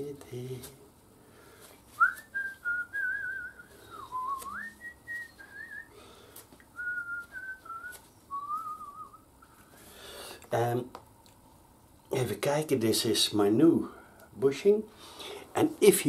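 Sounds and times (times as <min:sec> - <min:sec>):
person whistling a tune: 0:02.0 - 0:05.9, 0:06.8 - 0:09.2.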